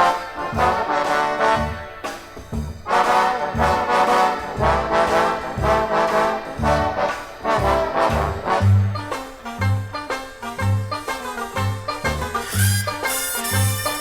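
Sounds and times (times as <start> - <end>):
brass section playing chords: 0.0 - 14.0
low bass notes: 1.5 - 11.0.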